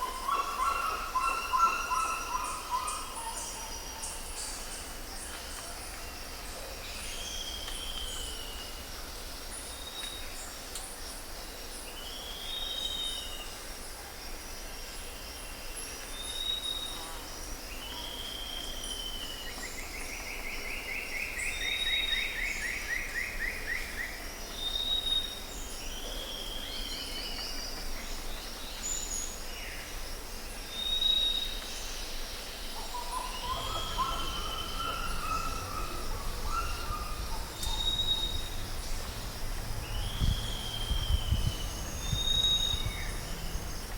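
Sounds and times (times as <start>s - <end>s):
birds calling: 32.8s - 43.9s
steady low rumble: 33.6s - 43.9s.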